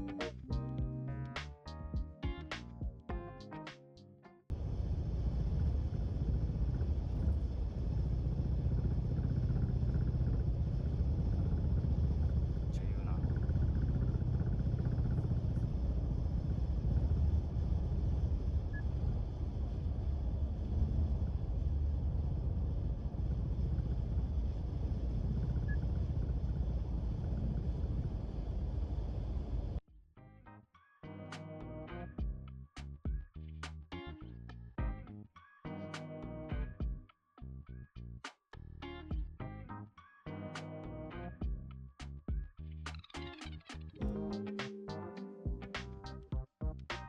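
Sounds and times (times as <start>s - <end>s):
car road rumble: 4.6s - 29.8s.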